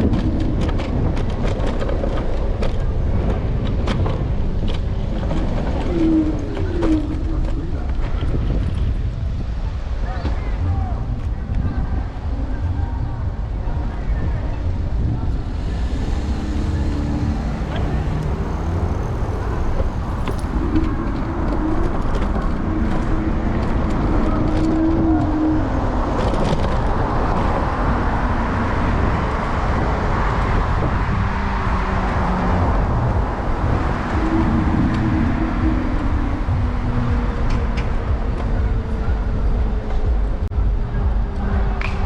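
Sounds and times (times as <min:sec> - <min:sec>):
car traffic passing: 0:00.0 - 0:42.0
road noise: 0:00.0 - 0:42.0
wind rumble: 0:00.0 - 0:42.0
falling motor tone: 0:15.3 - 0:22.1.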